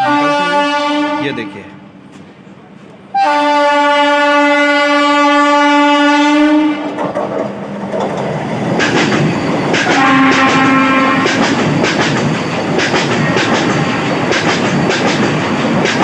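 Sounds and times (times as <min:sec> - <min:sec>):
train horn blast: 0:00.0 - 0:02.0, 0:03.1 - 0:07.0, 0:09.8 - 0:11.6
train rushing past: 0:00.0 - 0:16.0
wheel clatter over rail joints: 0:06.8 - 0:16.0.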